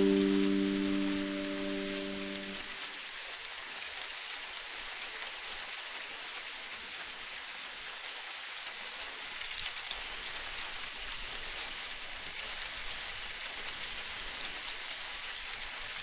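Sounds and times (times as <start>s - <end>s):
singing bowl chord: 0.0s - 2.8s
rain hissing: 0.0s - 3.1s.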